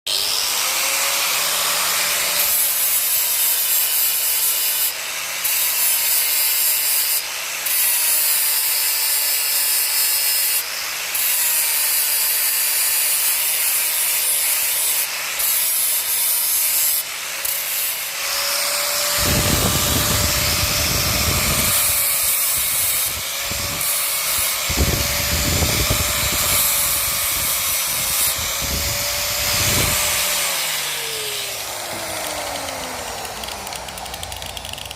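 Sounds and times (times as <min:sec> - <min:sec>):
angle grinder on metal: 0:00.1 - 0:34.9.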